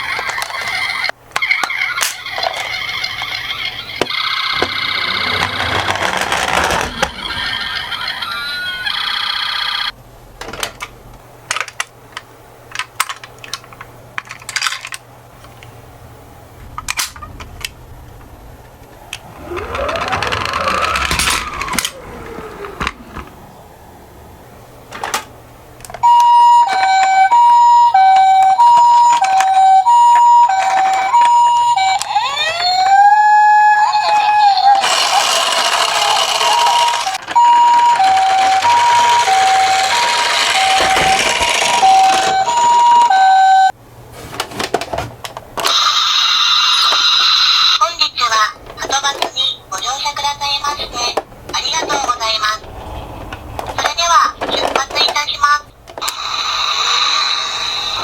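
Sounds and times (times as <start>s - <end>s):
two-tone ambulance siren: 7.7s - 9.9s, 19.3s - 23.2s, 26.0s - 43.7s
siren-like glide: 30.5s - 43.7s.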